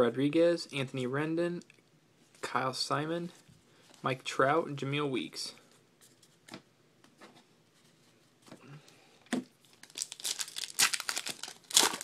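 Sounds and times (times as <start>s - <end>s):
card pack wrapper crinkling: 9.6s - 12.0s.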